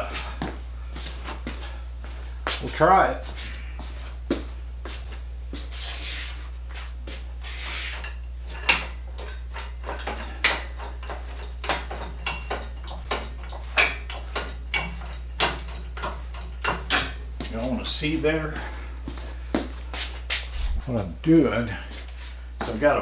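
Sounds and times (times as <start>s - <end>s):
steady low hum: 0.0s - 23.0s
metal clanks and knocks: 8.0s - 17.2s.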